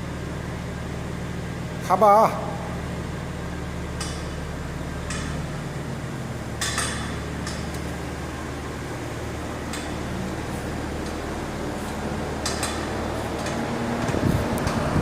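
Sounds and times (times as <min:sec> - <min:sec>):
low engine hum: 0:00.0 - 0:15.0
sharp metallic clicks from car: 0:04.0 - 0:04.4, 0:05.0 - 0:05.5, 0:06.6 - 0:08.0, 0:09.6 - 0:10.0, 0:12.4 - 0:14.9.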